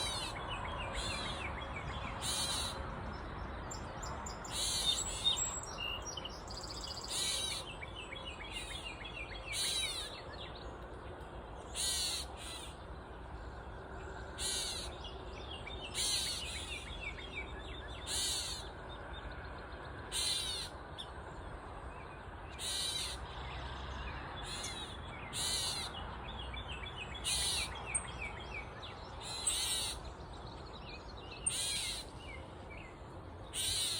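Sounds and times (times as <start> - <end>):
bird giving harsh calls: 0.0 - 1.4, 2.2 - 2.8, 4.5 - 5.2, 7.0 - 7.7, 9.5 - 10.1, 11.7 - 12.8, 14.4 - 15.0, 15.9 - 16.8, 18.0 - 18.7, 20.1 - 20.8, 22.6 - 23.2, 24.4 - 26.0, 27.2 - 27.8, 29.2 - 30.0, 31.4 - 32.1, 33.5 - 33.9.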